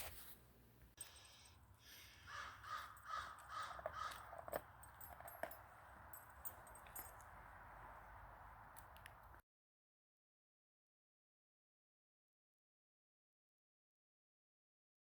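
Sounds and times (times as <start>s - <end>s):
short repeated bird calls: 1.0s - 4.3s.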